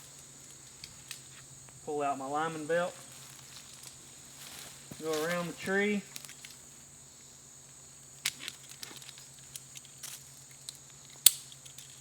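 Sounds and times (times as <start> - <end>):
rope and strap rustling: 2.5 - 6.7, 8.2 - 10.8
strap buckle clicks: 11.1 - 12.0.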